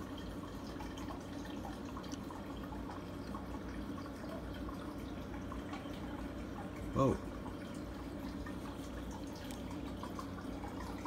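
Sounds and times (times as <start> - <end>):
aquarium water trickling and bubbling: 0.0 - 11.0
low steady hum: 0.0 - 11.0
water drips and splashes: 0.0 - 11.0.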